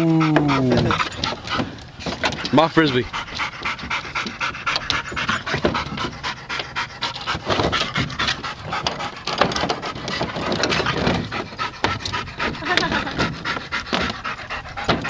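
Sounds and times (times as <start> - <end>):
dogs panting hard: 0.0 - 15.0.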